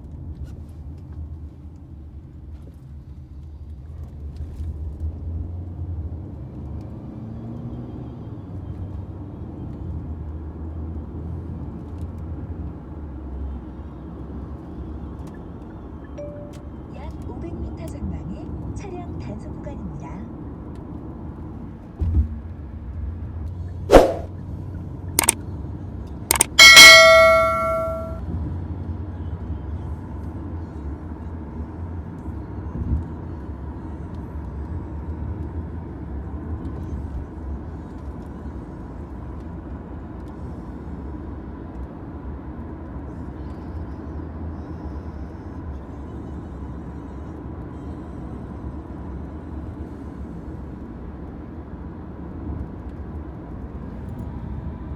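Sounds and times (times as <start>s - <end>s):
car engine and road rumble: 0.0s - 54.9s
metallic bell ding: 16.2s - 16.8s, 26.3s - 28.2s
sharp clicks: 26.3s - 28.1s.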